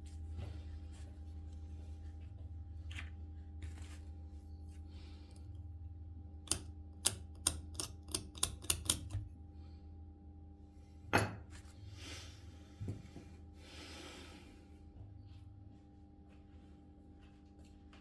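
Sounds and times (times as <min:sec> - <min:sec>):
steady electrical hum: 0:00.0 - 0:18.0.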